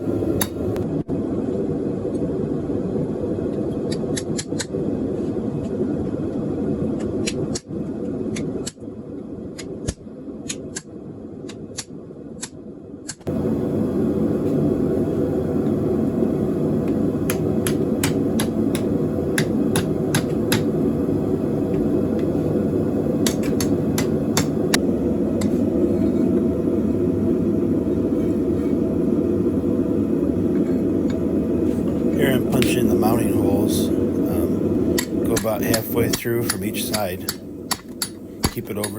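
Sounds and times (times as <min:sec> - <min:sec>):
steady low rumble: 0:00.0 - 0:38.9
hammer striking steel on anvil: 0:35.0 - 0:38.9.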